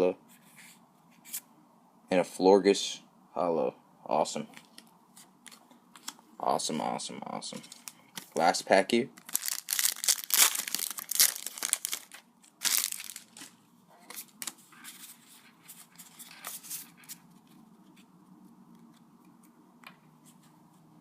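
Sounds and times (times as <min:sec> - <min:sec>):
foil wrapper tearing: 0:09.2 - 0:13.5
foil crinkling: 0:09.2 - 0:13.6.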